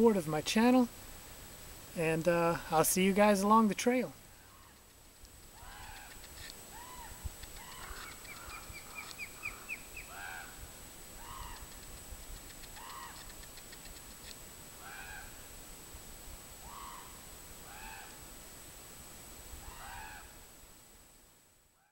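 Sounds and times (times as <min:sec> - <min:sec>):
bird chirping: 0:05.6 - 0:10.4
crow cawing: 0:05.6 - 0:10.6, 0:11.2 - 0:11.7, 0:12.8 - 0:13.3, 0:14.8 - 0:15.4, 0:16.6 - 0:18.2, 0:19.6 - 0:20.4.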